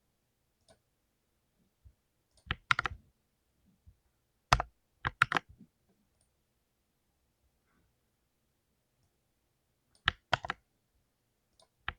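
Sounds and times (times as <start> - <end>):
mechanical keyboard typing clicks: 2.4 - 3.0, 4.5 - 5.5, 10.0 - 10.6.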